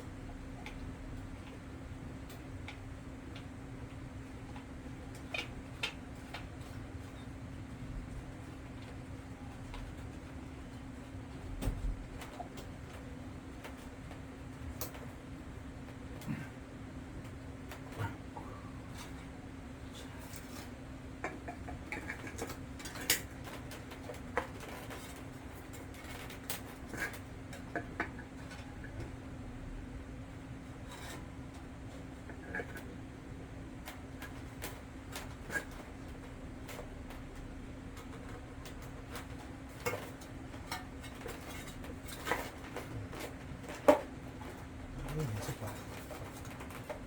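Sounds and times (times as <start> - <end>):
faint steady hum: 0.0 - 47.0
clicks and taps of fan parts: 0.6 - 7.2, 11.5 - 15.2, 19.9 - 29.2, 33.8 - 47.0.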